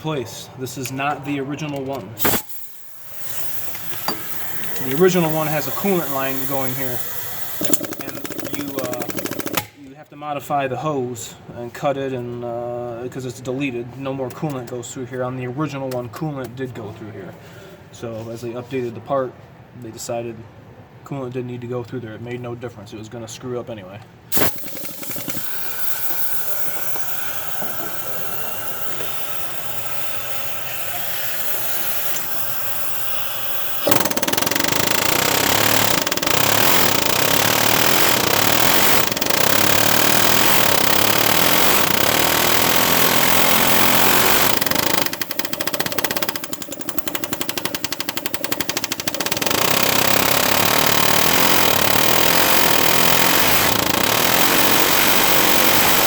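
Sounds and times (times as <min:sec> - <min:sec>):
power hammer rattling on metal: 0:02.0 - 0:09.8, 0:24.3 - 0:56.0.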